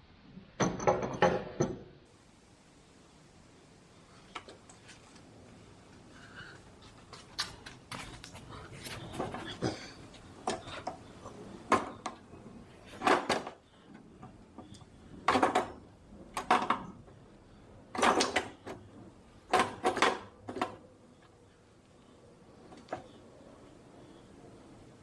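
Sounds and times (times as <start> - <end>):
metallic clicking and clattering of tools: 18.0 - 18.8.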